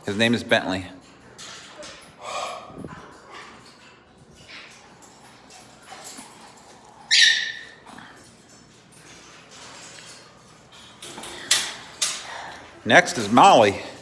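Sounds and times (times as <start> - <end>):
parrot squawking: 7.1 - 7.9.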